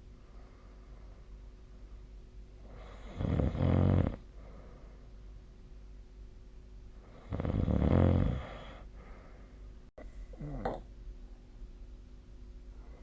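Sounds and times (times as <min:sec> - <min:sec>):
person snoring: 0:02.7 - 0:04.2, 0:07.1 - 0:08.9.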